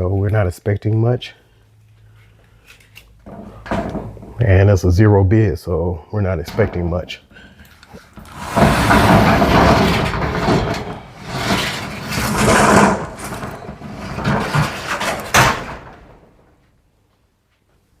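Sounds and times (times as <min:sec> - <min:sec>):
metal door clank: 0:06.4 - 0:07.2, 0:08.1 - 0:16.5
metal roll-up door rattling: 0:06.4 - 0:07.2, 0:08.0 - 0:16.5.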